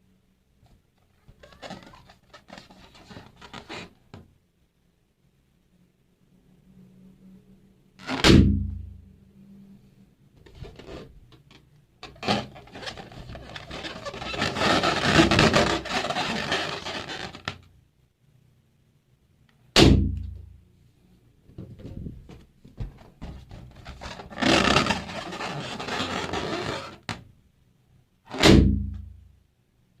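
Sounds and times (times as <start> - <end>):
rubber balloons rustling: 1.0 - 4.2, 8.0 - 8.3, 10.4 - 17.7, 21.7 - 27.2
balloon pops: 8.0 - 8.6, 28.3 - 28.9.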